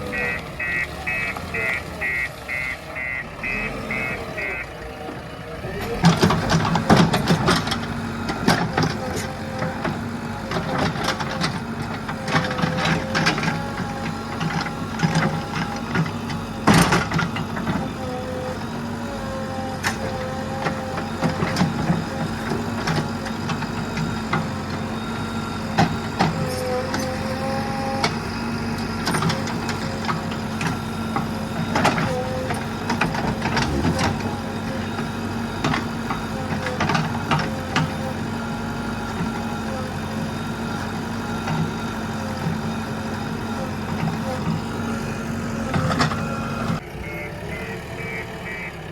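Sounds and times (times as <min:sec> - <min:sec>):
heavy machine engine running: 0:00.0 - 0:48.9.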